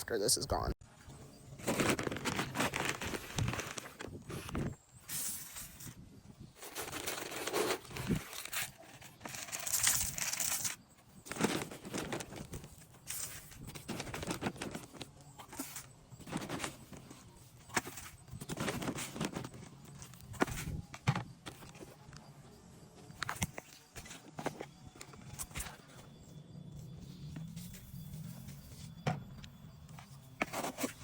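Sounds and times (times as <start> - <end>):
feed bag rustling and crinkling: 1.5 - 22.0.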